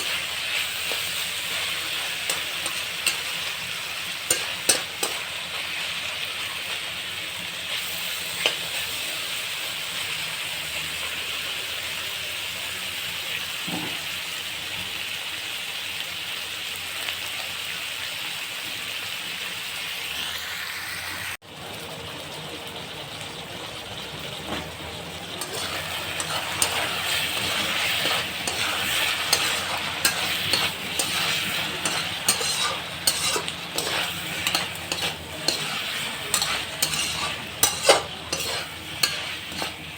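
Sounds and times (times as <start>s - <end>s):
spoon scraping a pan: 0.0s - 6.7s, 7.7s - 9.0s, 24.5s - 39.9s
chicken sizzling in oil: 0.0s - 39.9s.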